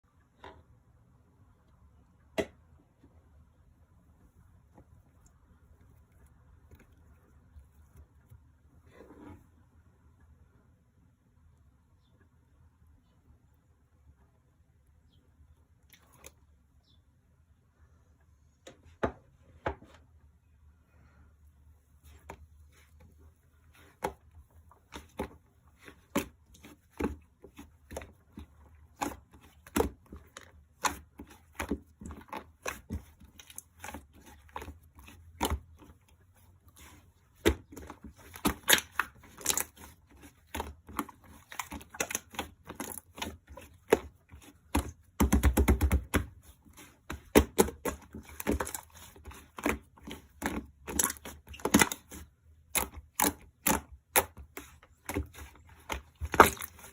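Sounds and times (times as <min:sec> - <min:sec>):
slime clicking and crackling: 0:36.8 - 0:56.9.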